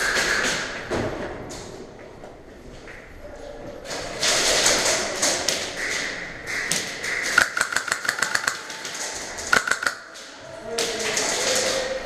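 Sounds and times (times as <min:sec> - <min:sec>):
airsoft gun rapid firing: 0:07.3 - 0:10.2.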